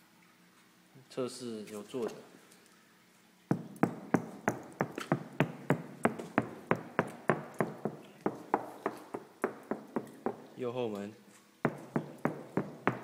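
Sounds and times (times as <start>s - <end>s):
knuckles knocking on car door: 3.5s - 10.4s, 11.7s - 13.0s.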